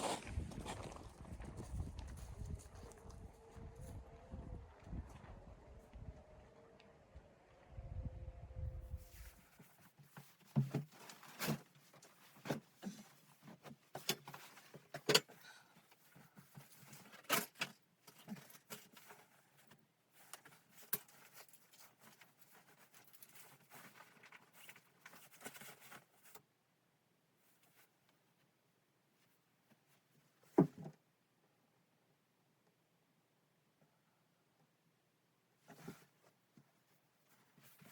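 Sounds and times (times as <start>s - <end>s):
faint rustling: 35.6s - 37.9s.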